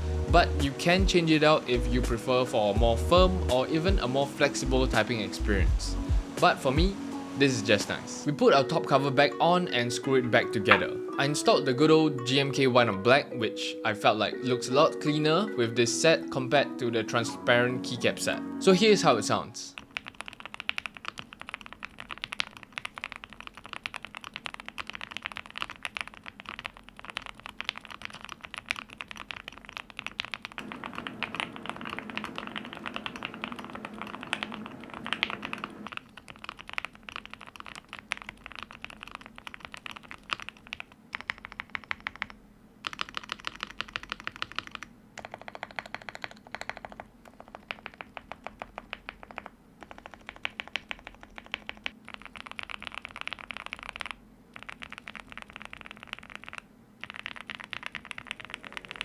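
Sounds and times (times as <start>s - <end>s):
mechanical keyboard typing: 19.8s - 59.0s.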